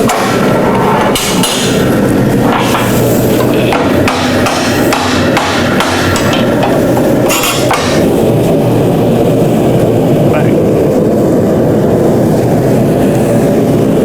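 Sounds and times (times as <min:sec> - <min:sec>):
forge burner roar: 0:00.0 - 0:14.0
hammer striking steel bar: 0:03.7 - 0:08.0.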